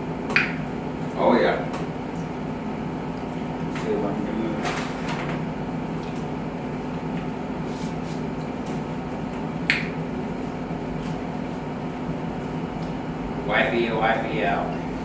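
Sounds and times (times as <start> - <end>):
low room hum: 0.0 - 15.0.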